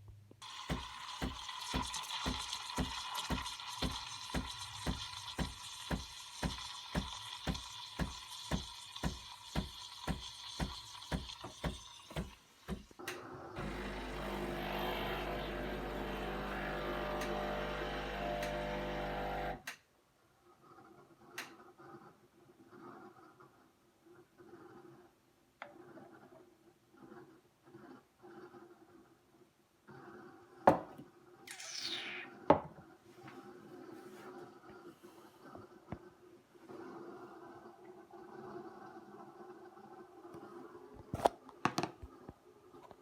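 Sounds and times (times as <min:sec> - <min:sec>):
espresso machine pump pulsing and humming: 0:00.4 - 0:12.8, 0:13.6 - 0:19.6.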